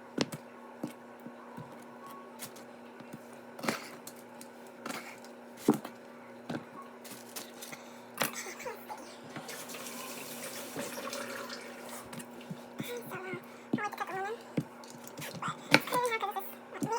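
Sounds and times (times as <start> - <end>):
steady low hum: 11.9 - 16.9.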